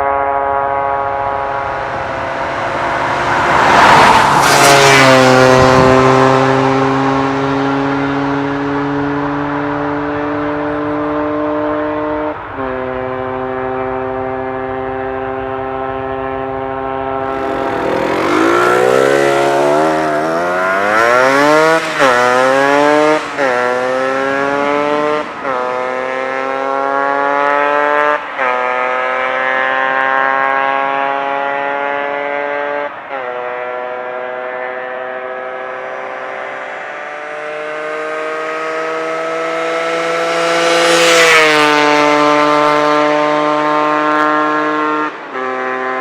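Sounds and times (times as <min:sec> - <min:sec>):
motorcycle engine accelerating: 0:04.4 - 0:09.9, 0:15.6 - 0:31.9.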